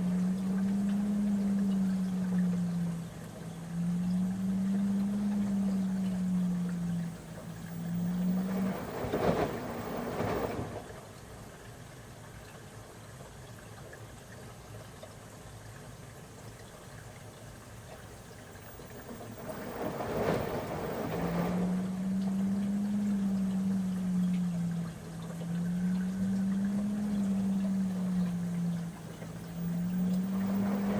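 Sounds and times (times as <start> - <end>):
low rumble: 0.0 - 10.8, 18.6 - 30.9
motor hum: 0.0 - 11.1, 16.4 - 30.9
water sloshing in washing machine: 0.0 - 11.7, 13.1 - 30.9.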